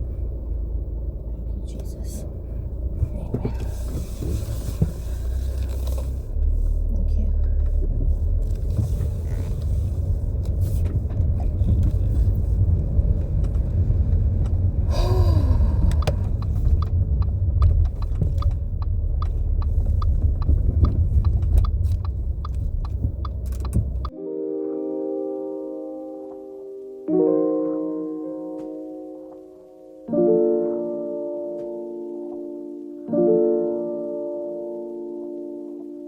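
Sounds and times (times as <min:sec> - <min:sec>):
road rumble inside car: 0:00.0 - 0:24.1.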